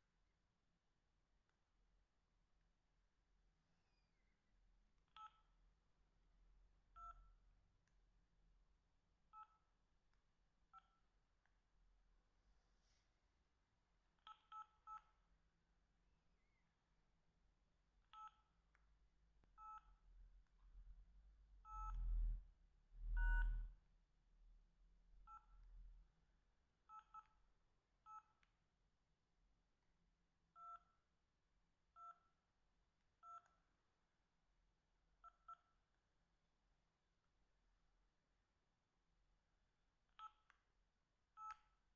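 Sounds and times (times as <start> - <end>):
phone keypad beeps: 5.1 - 5.5, 18.1 - 18.4, 23.2 - 23.6.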